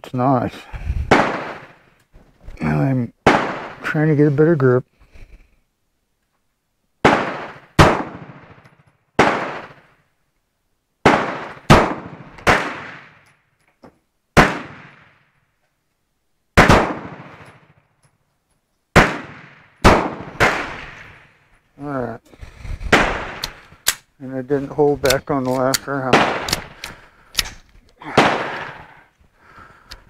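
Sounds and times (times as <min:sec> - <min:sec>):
pistol shots echoing: 0:01.1 - 0:01.8, 0:03.2 - 0:03.9, 0:07.0 - 0:08.6, 0:09.2 - 0:09.9, 0:11.0 - 0:13.2, 0:14.4 - 0:15.2, 0:16.6 - 0:17.8, 0:19.0 - 0:21.4, 0:25.6 - 0:26.8, 0:28.0 - 0:28.8.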